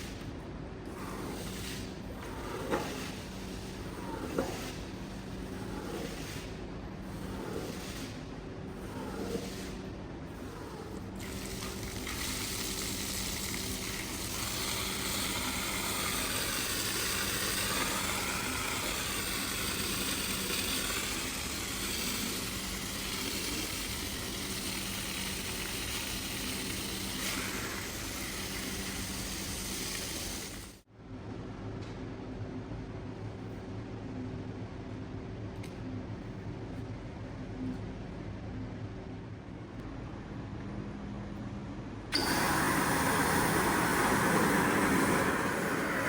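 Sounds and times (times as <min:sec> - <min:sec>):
low machine hum: 0:00.0 - 0:46.0
hissing spray noise: 0:10.4 - 0:30.8, 0:42.2 - 0:46.0.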